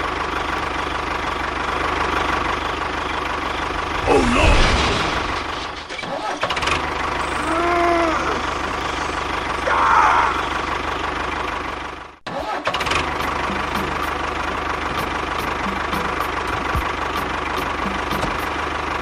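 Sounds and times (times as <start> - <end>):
motor running: 6.6 - 11.8.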